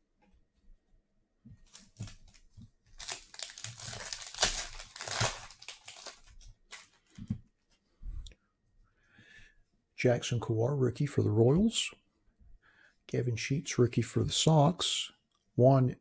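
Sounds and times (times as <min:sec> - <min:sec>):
foil wrapper tearing and crinkling: 0:03.0 - 0:07.0.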